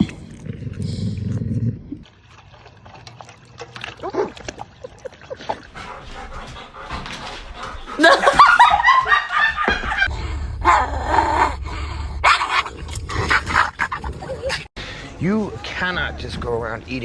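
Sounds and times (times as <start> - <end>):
dogs yipping and barking: 3.9 - 5.8.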